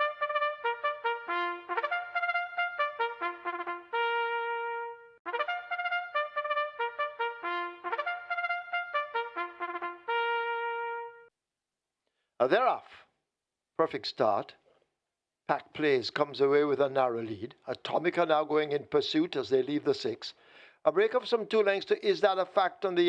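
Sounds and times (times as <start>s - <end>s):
solo trumpet bugle call: 0.0s - 11.3s.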